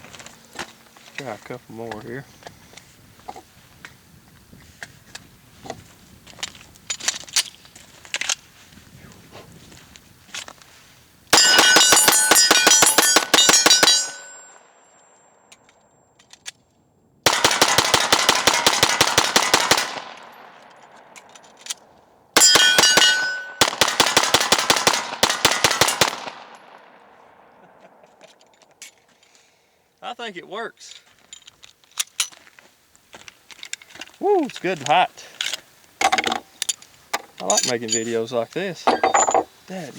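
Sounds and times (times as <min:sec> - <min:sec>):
pistol shots: 0:11.4 - 0:14.4, 0:17.3 - 0:21.2, 0:22.4 - 0:27.6
steel targets ringing: 0:11.4 - 0:15.2, 0:22.4 - 0:23.7, 0:38.9 - 0:39.5.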